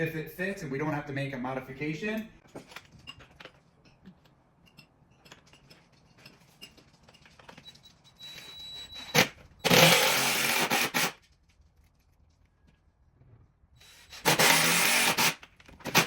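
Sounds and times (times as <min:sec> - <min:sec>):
drill driving screws: 0:08.9 - 0:11.2, 0:13.8 - 0:16.0.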